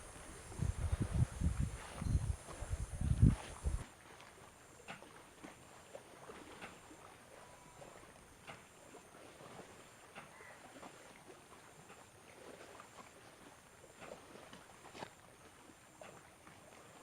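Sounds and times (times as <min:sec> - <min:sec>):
soft rubbing on head: 0:00.0 - 0:03.8.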